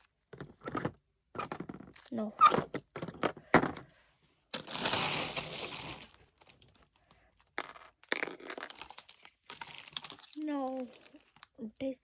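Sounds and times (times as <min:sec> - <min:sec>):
rustling crinkling: 0:04.5 - 0:11.8.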